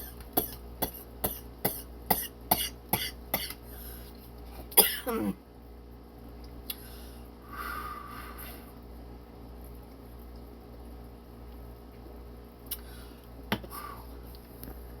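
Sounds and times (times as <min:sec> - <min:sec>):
low room hum: 0:00.0 - 0:15.0.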